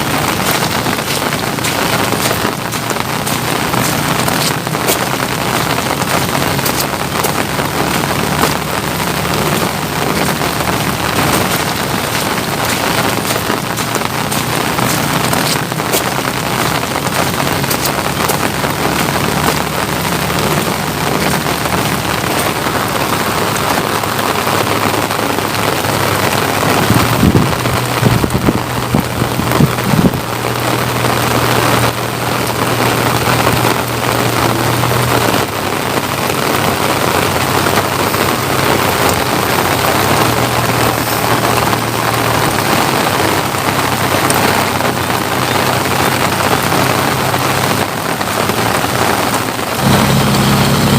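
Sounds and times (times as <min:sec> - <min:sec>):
low thumps: 0:00.0 - 0:45.0
steady rain falling: 0:00.0 - 0:50.9.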